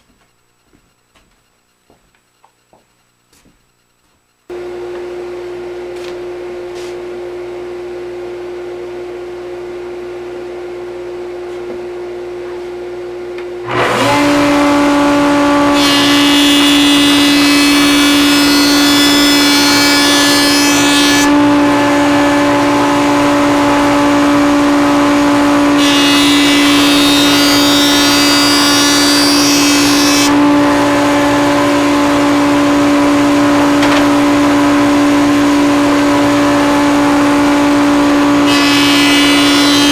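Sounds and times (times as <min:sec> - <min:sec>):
louder machine: 0:04.5 - 0:06.6, 0:13.0 - 0:39.9
machinery whine: 0:04.5 - 0:15.8, 0:21.3 - 0:27.4, 0:30.3 - 0:38.5.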